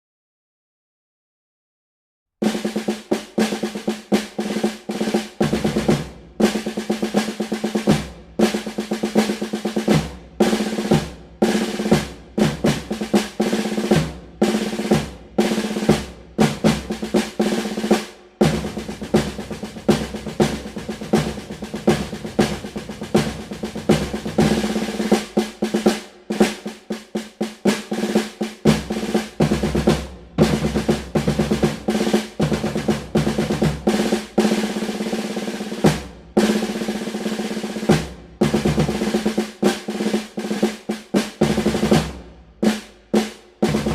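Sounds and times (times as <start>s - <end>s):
snare drum rolls and strokes: 2.4s - 43.9s
deeper drum hits: 18.4s - 26.0s.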